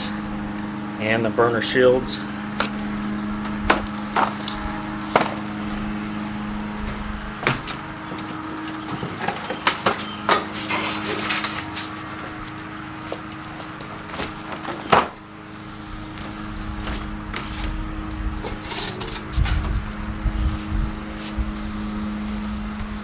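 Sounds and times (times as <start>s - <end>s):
cardboard and styrofoam rustling: 3.0s - 5.9s, 6.8s - 15.2s, 16.8s - 20.0s
grill parts knocking and clicking: 3.4s - 5.8s, 6.9s - 15.2s, 16.9s - 19.9s.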